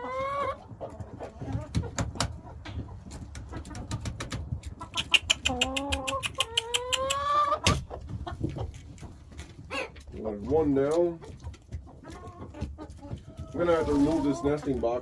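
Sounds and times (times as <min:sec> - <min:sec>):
hens clucking: 0:00.0 - 0:15.0
sharp clicks and taps: 0:03.3 - 0:07.3.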